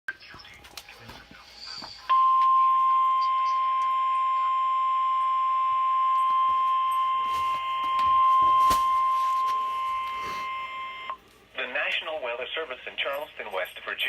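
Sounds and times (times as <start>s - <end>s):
steady high-pitched alarm tone: 1.5s - 11.2s.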